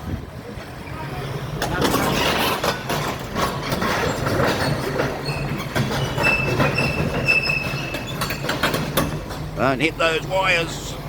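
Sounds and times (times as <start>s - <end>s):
high squeal from running gear: 3.6s - 8.6s.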